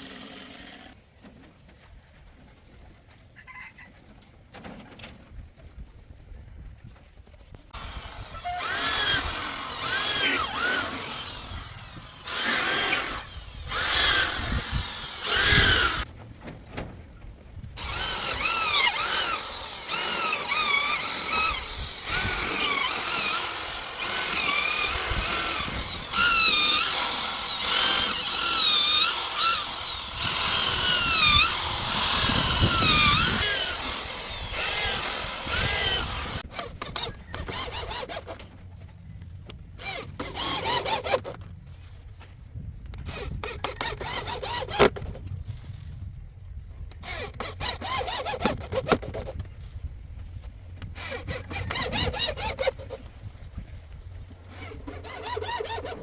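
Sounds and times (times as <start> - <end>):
power drill whining in pulses: 0.0 - 1.0, 7.8 - 16.1, 17.8 - 38.4, 39.8 - 41.3, 43.0 - 45.1, 47.0 - 49.2, 51.0 - 53.0, 54.5 - 56.0.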